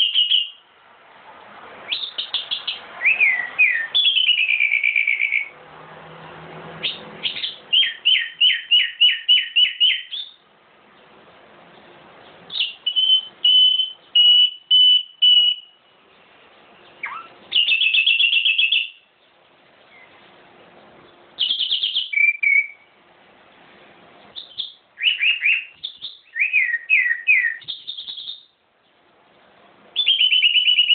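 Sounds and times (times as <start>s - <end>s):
songbird singing: 0.0s - 0.7s, 1.8s - 5.6s, 6.2s - 23.1s, 24.0s - 30.9s.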